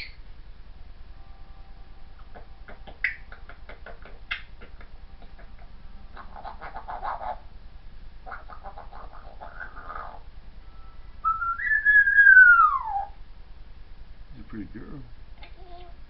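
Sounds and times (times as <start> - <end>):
parrot beatboxing clicks and pops: 2.2 - 7.4.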